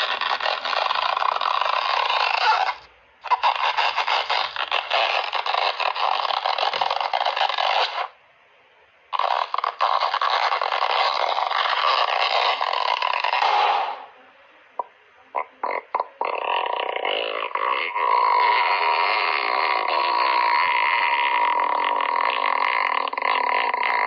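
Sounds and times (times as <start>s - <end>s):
fabric stretched crackly scraping: 0.0s - 8.1s.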